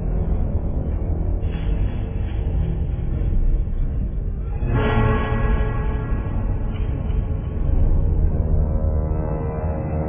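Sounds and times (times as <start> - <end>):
deep steady rumble: 0.0 - 9.4.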